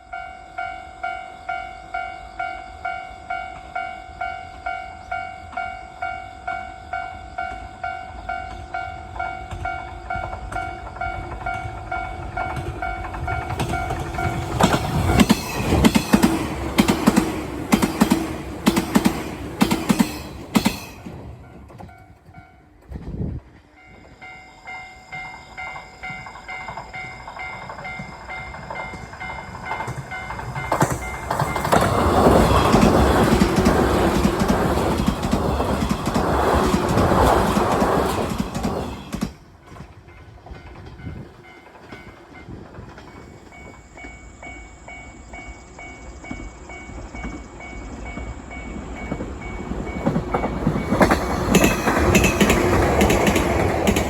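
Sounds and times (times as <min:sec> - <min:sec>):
level crossing warning bell: 0:00.0 - 0:22.8, 0:23.7 - 0:38.7
train wheels clattering: 0:08.4 - 0:24.2, 0:25.2 - 0:44.5, 0:45.4 - 0:54.0.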